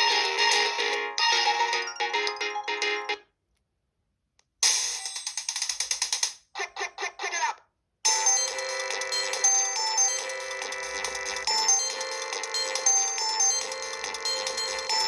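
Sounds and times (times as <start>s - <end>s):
mobile phone ringtone: 0.0s - 3.2s, 8.1s - 15.0s.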